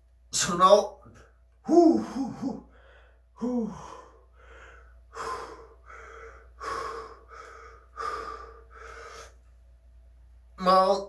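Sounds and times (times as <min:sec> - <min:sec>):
man panting hard: 0:01.7 - 0:09.4.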